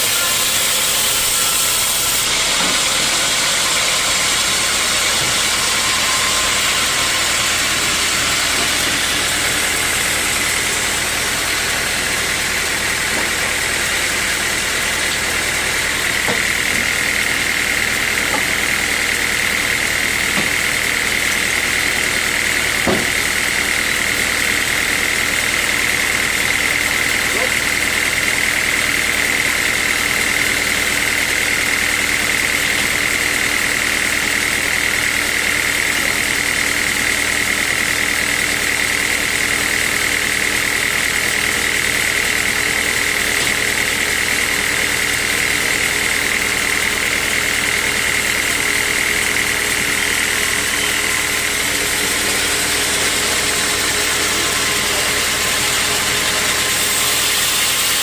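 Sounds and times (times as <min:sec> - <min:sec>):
sawmill machinery high whine: 0:00.0 - 0:58.0
machinery low hum: 0:47.1 - 0:57.2.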